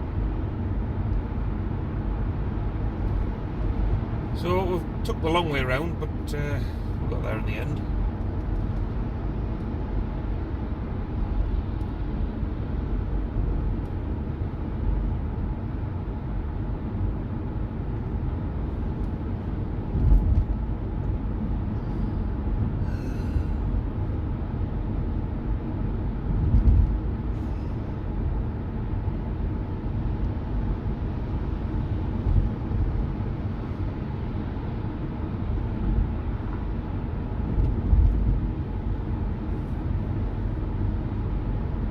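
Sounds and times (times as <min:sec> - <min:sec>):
car road and engine rumble: 0:00.0 - 0:41.9
low bumps: 0:26.3 - 0:27.1.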